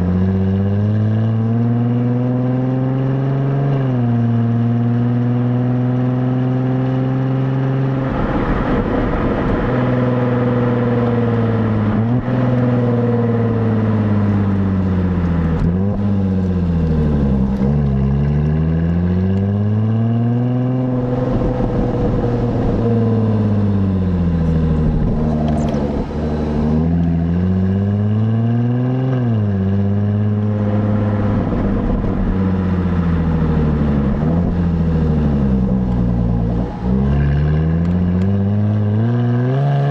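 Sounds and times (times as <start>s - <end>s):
car exhaust revving: 8.0s - 39.9s.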